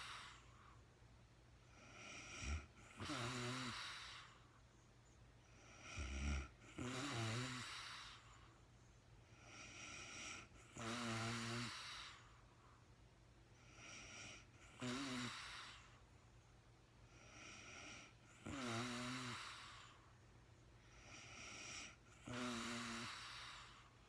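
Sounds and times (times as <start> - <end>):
woman snoring: 0.0 - 0.4, 1.8 - 4.4, 5.6 - 8.3, 9.4 - 12.2, 13.7 - 15.9, 17.2 - 20.0, 21.0 - 24.0.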